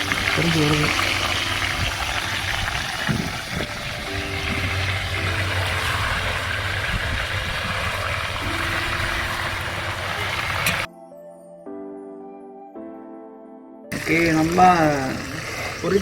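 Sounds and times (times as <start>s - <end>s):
chicken sizzling in oil: 0.0s - 10.9s, 13.9s - 16.0s
wind rumbling on microphone: 0.0s - 10.9s.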